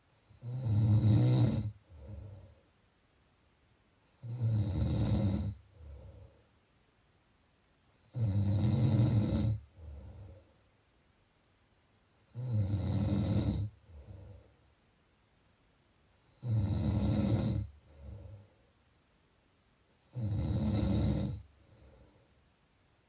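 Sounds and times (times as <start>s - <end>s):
person snoring: 0.3s - 2.6s, 4.2s - 6.3s, 8.1s - 10.4s, 12.3s - 14.4s, 16.3s - 18.5s, 20.1s - 22.1s.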